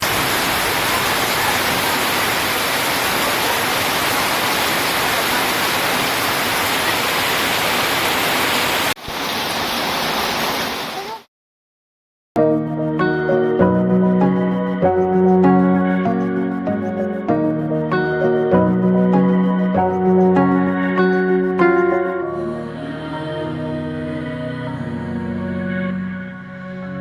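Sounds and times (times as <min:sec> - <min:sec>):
heavy rain hissing: 0:00.0 - 0:11.3.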